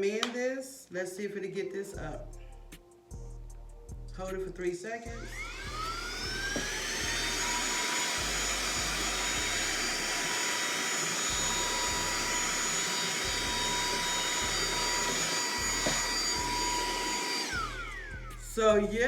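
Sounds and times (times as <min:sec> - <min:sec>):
handheld vacuum running: 0:05.1 - 0:19.0.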